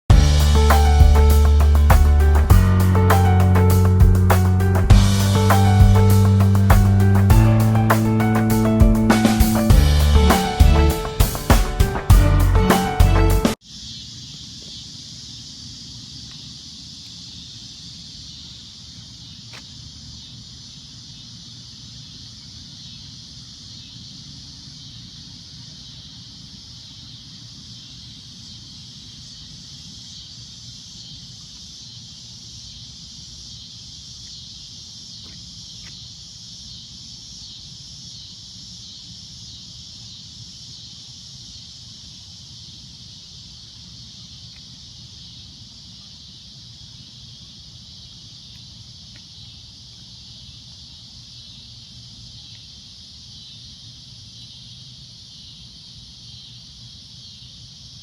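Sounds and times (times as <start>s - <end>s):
low rumble: 0.1s - 11.0s
cicadas droning: 0.1s - 58.0s.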